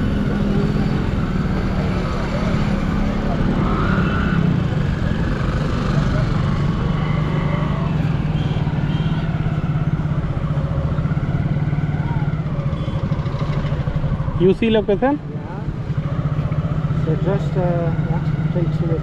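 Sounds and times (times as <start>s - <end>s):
motorcycle engine running: 4.6s - 19.0s.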